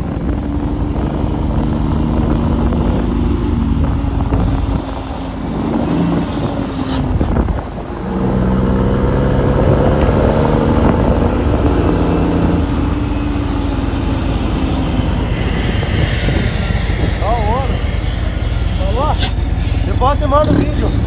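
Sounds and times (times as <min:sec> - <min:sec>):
truck diesel engine rumbling: 0:00.0 - 0:21.0
hiss: 0:15.0 - 0:20.0.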